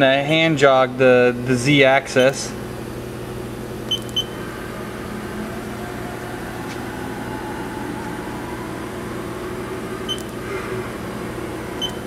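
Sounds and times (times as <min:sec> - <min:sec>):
machine electrical hum: 0:00.0 - 0:12.0
short control panel beep: 0:03.9 - 0:04.4, 0:10.1 - 0:10.4, 0:11.8 - 0:12.0.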